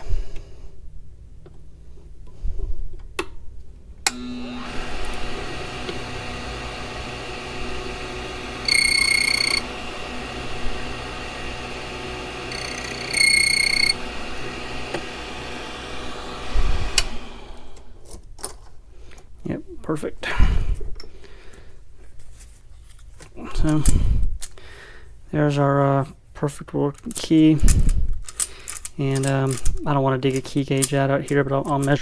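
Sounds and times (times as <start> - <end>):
key cutting machine running: 4.1 - 17.8
cutter squealing on key blank: 8.6 - 9.7, 12.5 - 14.0.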